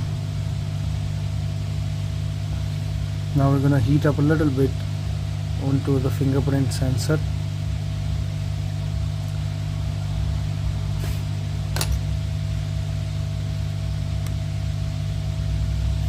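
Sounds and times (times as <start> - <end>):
hot-air gun blowing: 10.9 - 12.1.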